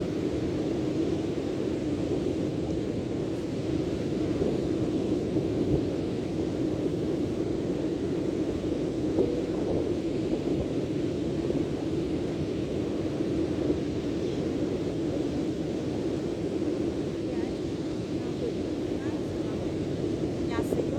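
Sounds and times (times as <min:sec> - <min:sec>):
sea at the shore: 0:00.0 - 0:20.9
wind: 0:00.0 - 0:20.9.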